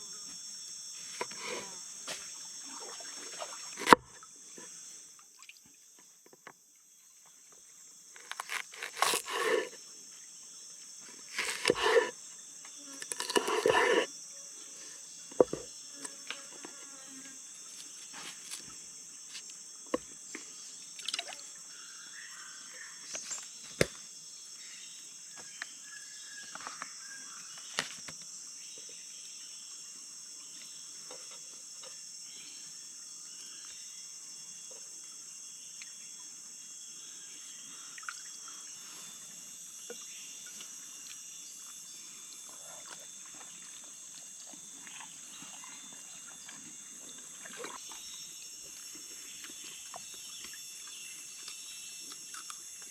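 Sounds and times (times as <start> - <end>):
high-pitched insect drone: 7.9 - 19.8.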